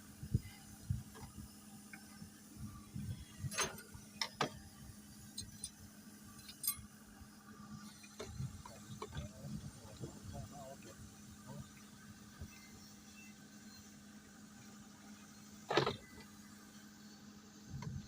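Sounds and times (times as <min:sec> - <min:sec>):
steady low hum: 0:00.0 - 0:18.0
metal tools clinking: 0:06.4 - 0:06.8.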